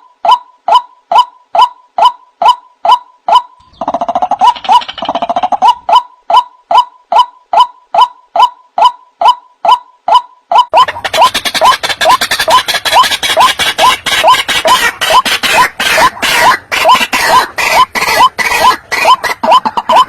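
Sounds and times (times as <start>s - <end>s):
waterhen calls: 0.2s - 20.0s
rapid bird chattering: 3.3s - 7.7s, 10.8s - 20.0s.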